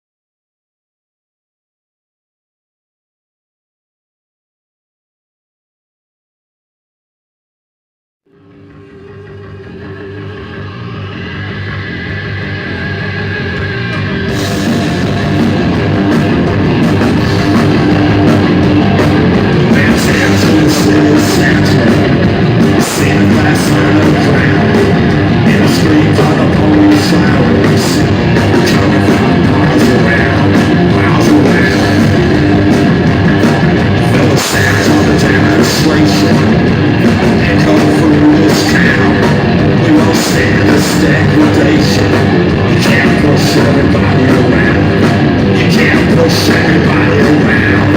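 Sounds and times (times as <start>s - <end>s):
bass guitar: 8.3s - 47.9s
distorted electric guitars: 8.3s - 47.9s
drum kit with cymbal hits: 8.3s - 47.9s.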